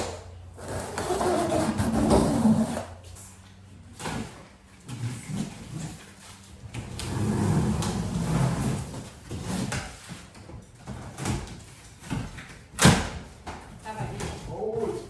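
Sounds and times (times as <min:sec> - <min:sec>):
cardboard scraping and sliding: 0:00.6 - 0:03.0, 0:06.8 - 0:10.1.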